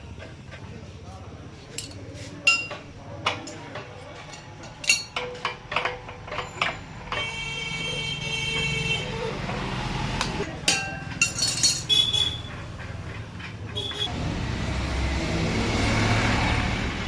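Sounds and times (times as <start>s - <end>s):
metallic clinks of tools and parts: 1.7s - 7.4s, 10.7s - 12.1s.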